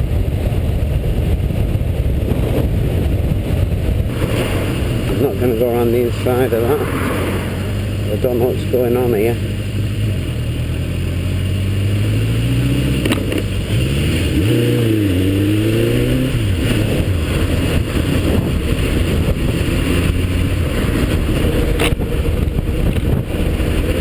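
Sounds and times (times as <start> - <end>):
motorcycle engine revving: 0.0 - 24.0
road and wind noise: 0.0 - 24.0.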